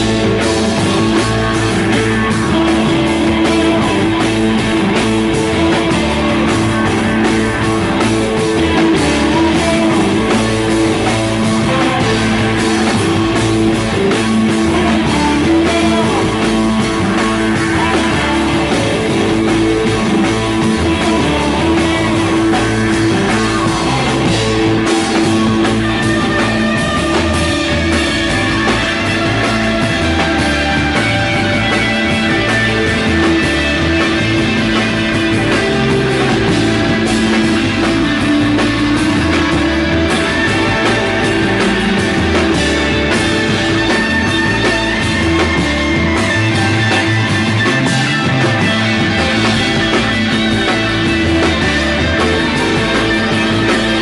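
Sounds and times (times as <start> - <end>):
rock band playing live: 0.0 - 54.0.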